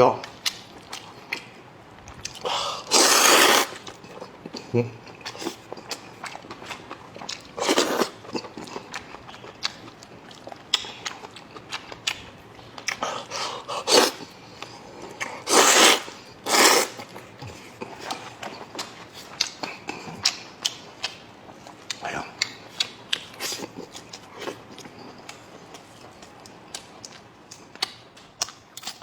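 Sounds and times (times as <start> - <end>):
person chewing noodles: 0.2 - 29.0
louder eating bursts: 2.3 - 10.5, 12.9 - 21.2.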